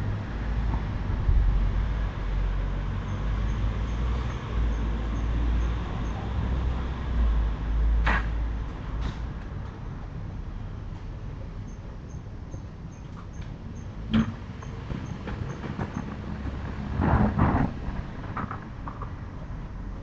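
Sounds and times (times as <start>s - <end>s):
low rumble: 0.0s - 3.5s, 15.6s - 20.0s.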